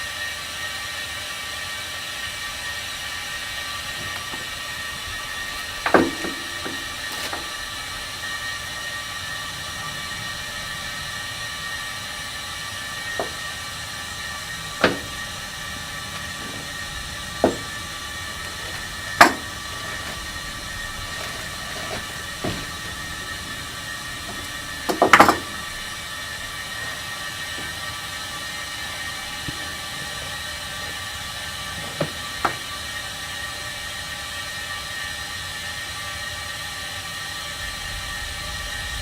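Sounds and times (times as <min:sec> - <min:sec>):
mechanical hum with faint whine: 0:00.0 - 0:39.0
sharp knocks and clanks: 0:03.5 - 0:08.9, 0:11.4 - 0:32.8.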